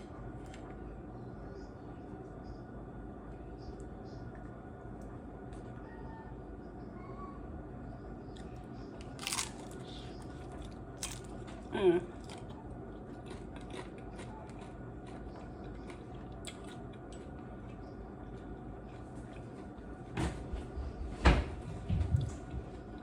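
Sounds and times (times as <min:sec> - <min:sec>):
low hum: 0:00.0 - 0:23.0
crunching a fried taco shell: 0:08.4 - 0:11.6, 0:12.2 - 0:17.8.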